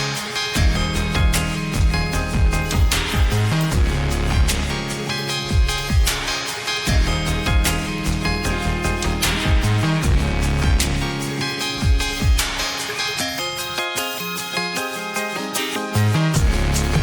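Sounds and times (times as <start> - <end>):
electronic music with beat: 0.0 - 17.0
deep bass notes sliding down: 0.6 - 4.8, 6.9 - 11.1.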